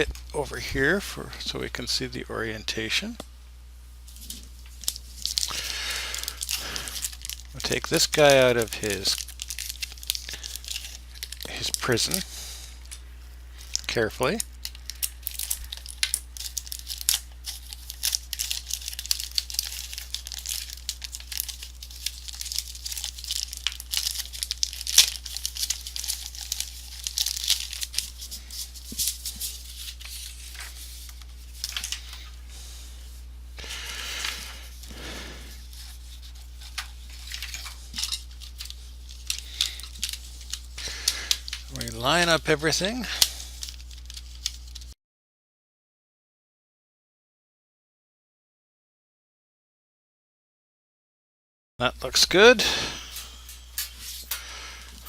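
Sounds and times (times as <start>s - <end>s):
plastic film crinkling: 4.1s - 32.4s, 33.6s - 45.0s.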